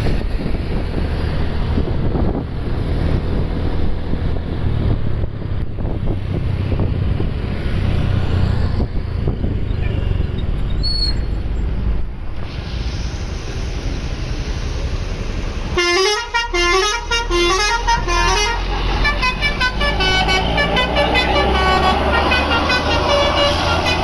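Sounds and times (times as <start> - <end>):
wind buffeting microphone: 0.0 - 10.8
bus engine rumbling: 0.0 - 24.0.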